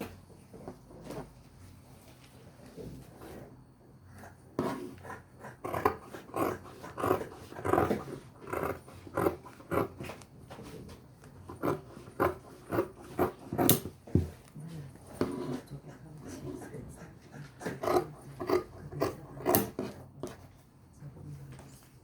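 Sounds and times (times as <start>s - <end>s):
shears snipping cloth: 11.6s - 13.9s.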